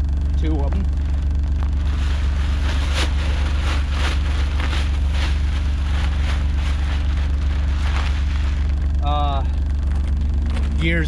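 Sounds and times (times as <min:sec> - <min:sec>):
vehicle engine idling: 0:00.0 - 0:11.0
rustling or scraping noises: 0:01.0 - 0:09.0.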